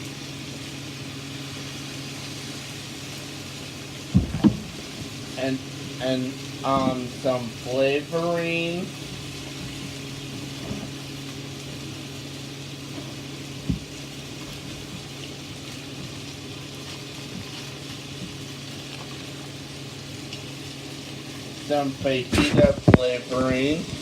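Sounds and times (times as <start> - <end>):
food sizzling in a pan: 0.0 - 24.0
low steady hum: 0.0 - 24.0
knock: 4.2 - 4.7.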